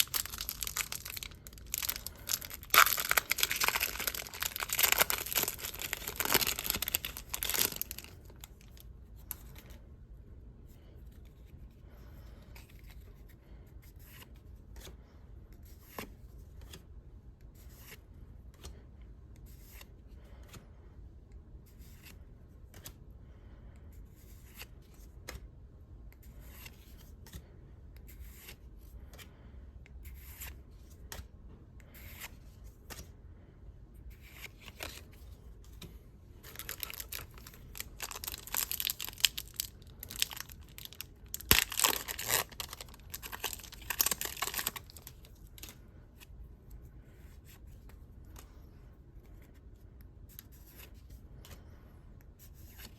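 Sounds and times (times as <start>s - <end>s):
packaging tearing and crinkling: 0.0s - 8.8s, 36.5s - 45.7s.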